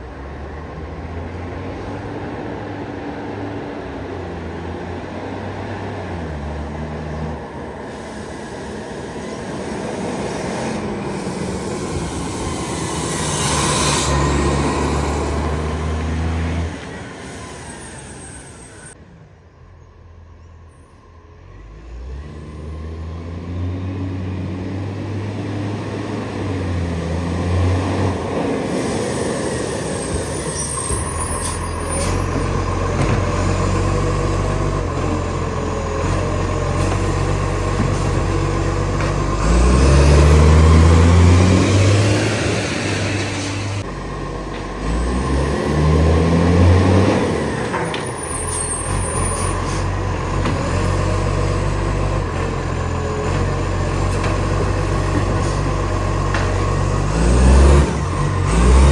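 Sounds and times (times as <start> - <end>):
garbage truck diesel engine: 0.0 - 58.9
air brake hiss: 7.8 - 14.6, 16.8 - 19.0, 28.5 - 32.3.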